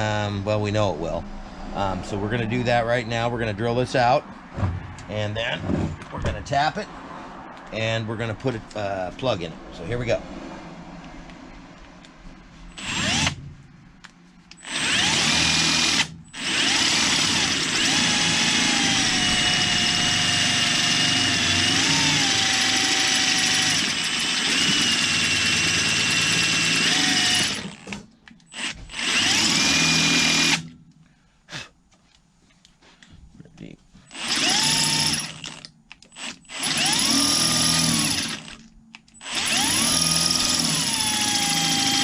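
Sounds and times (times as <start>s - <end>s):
power drill whining: 12.7s - 13.4s, 14.5s - 30.8s, 34.1s - 42.0s.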